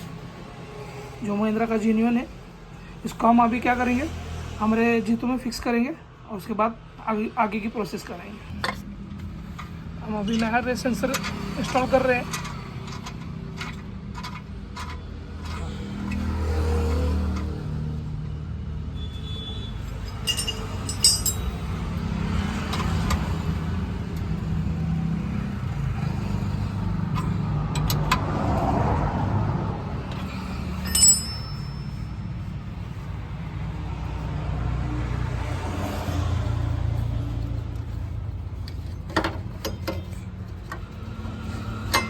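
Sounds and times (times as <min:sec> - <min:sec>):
vehicle engine rumbling: 0:08.2 - 0:42.0
tools clinking on metal: 0:19.8 - 0:21.9, 0:30.1 - 0:32.3.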